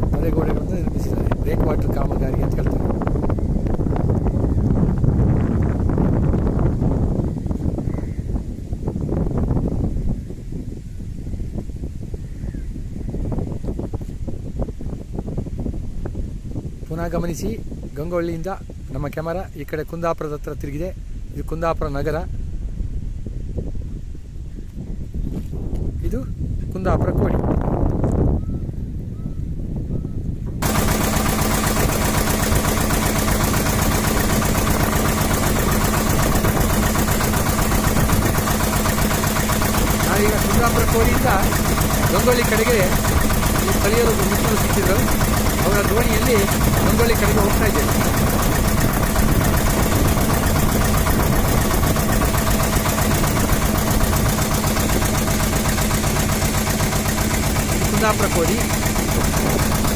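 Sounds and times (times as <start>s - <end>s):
boat engine chugging: 0.0s - 10.5s, 15.0s - 20.9s, 30.5s - 59.9s.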